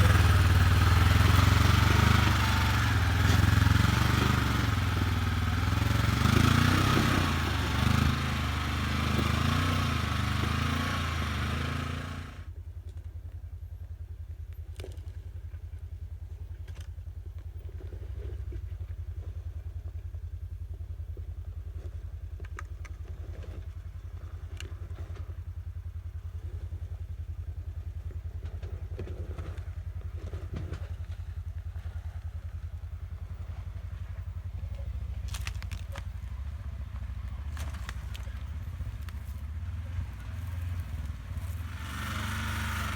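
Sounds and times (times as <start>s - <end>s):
rough-terrain noise: 0.0s - 13.5s, 16.4s - 42.9s
off-road vehicle engine running: 0.0s - 42.9s.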